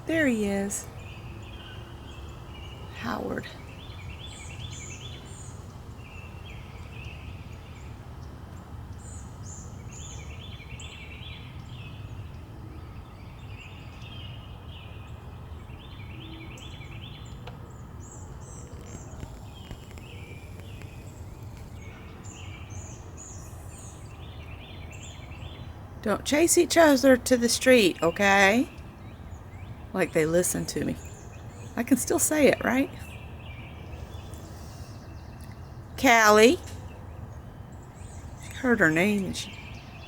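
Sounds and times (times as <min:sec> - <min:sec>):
songbirds singing: 0:00.0 - 0:40.0.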